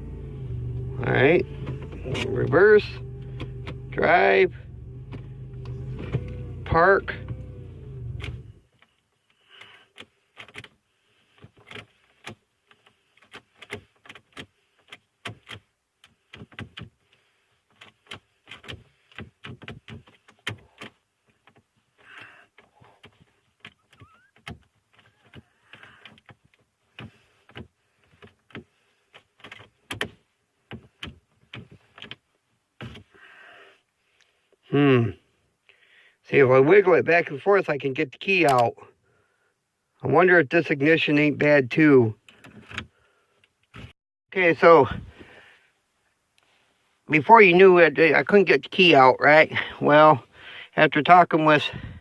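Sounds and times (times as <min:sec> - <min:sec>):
car keys clicking and rattling: 0:00.0 - 0:09.0, 0:09.6 - 0:33.1.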